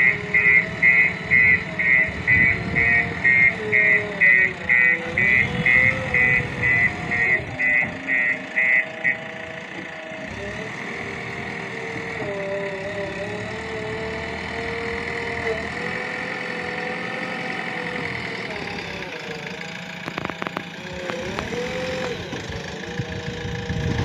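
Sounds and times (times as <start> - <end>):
diesel engine running: 0.0 - 24.0
rapid electronic beeps: 0.4 - 9.2, 20.0 - 22.2.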